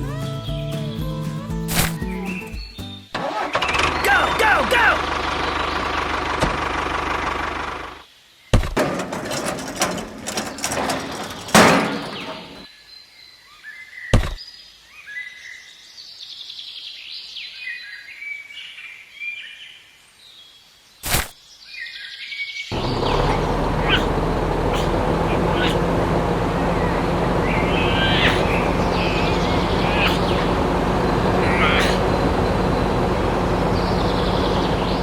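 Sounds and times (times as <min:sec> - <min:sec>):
small birds chirping: 0:00.0 - 0:03.2, 0:03.8 - 0:06.3, 0:10.2 - 0:35.0
sharp knocks: 0:23.8 - 0:28.8.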